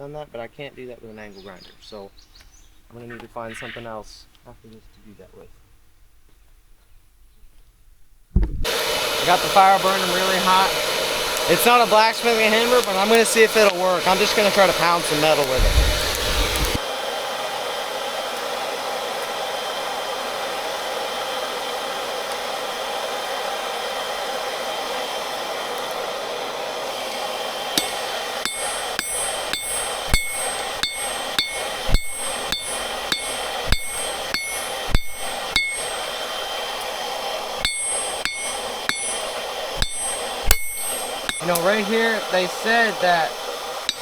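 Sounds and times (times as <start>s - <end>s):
hammer striking metal on anvil: 9.3s - 16.8s, 27.8s - 44.0s.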